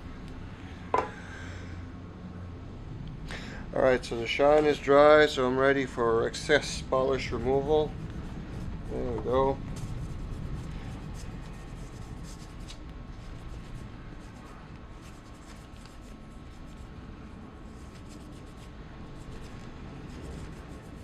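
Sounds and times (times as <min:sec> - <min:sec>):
scratchy rubbing of polish on boot: 0:17.7 - 0:21.0.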